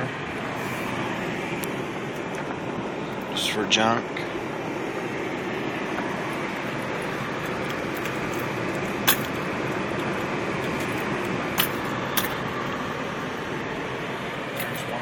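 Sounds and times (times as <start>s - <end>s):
truck engine and road noise: 0.0s - 15.0s.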